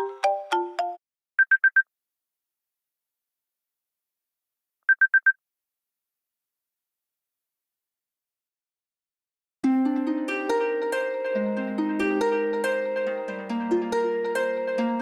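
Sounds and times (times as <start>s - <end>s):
ringtone quick high beeps: 4.9s - 5.4s.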